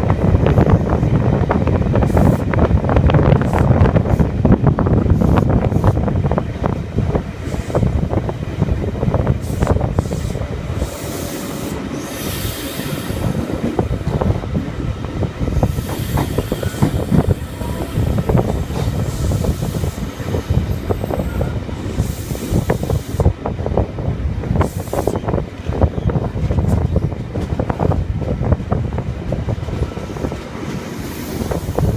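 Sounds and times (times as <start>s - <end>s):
rush of air: 0.0s - 31.9s
train rumble: 0.0s - 31.9s
train wheels clattering over rails: 0.0s - 31.9s.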